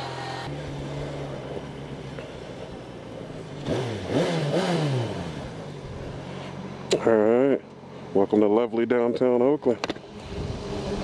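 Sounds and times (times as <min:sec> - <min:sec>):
motorcycle engine accelerating: 0:00.0 - 0:07.8, 0:09.9 - 0:11.0
wind rush: 0:10.0 - 0:11.0.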